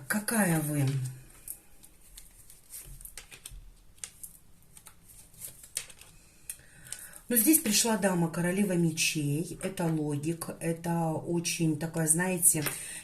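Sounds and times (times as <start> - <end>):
cards tapping and rustling: 1.8 - 6.1.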